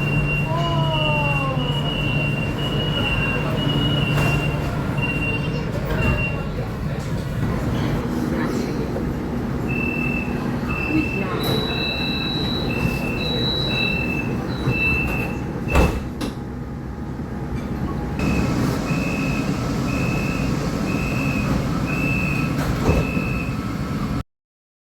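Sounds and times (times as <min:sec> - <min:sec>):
train rumble: 0:00.0 - 0:24.2
door-closing chime beeps: 0:02.1 - 0:06.4.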